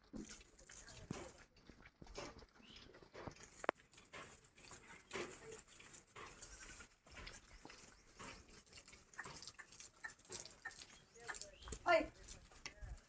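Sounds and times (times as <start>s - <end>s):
farm animals calling: 2.6s - 12.4s.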